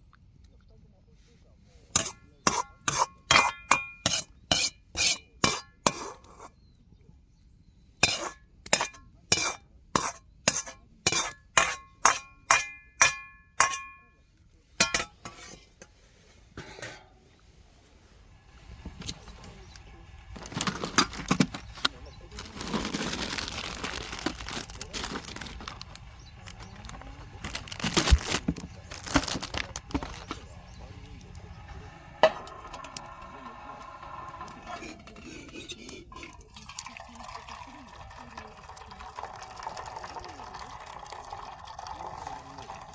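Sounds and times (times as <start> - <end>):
metal utensil clanking on a wok: 1.9 - 6.6, 8.0 - 14.2, 14.8 - 16.0, 16.6 - 17.2, 24.9 - 36.6
rustling and crinkling: 14.6 - 36.4.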